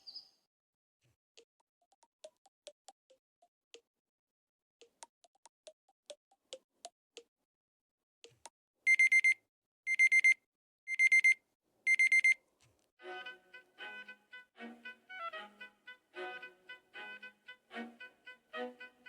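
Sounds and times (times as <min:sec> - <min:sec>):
quick high alarm beeps: 0:08.9 - 0:12.4.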